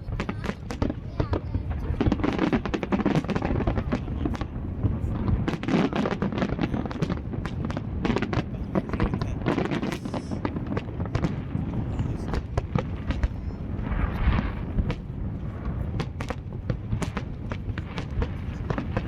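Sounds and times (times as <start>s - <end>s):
fireworks bangs and crackles: 0.0s - 19.0s
low rumble: 6.7s - 19.0s.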